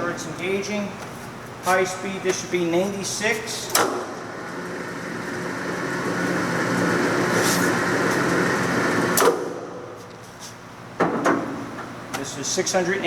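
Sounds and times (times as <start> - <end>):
lathe humming: 4.2 - 9.2.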